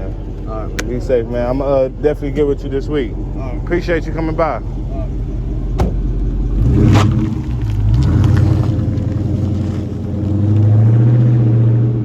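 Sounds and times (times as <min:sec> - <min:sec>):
car engine running: 0:00.0 - 0:10.7
sharp knocks: 0:05.8 - 0:06.2.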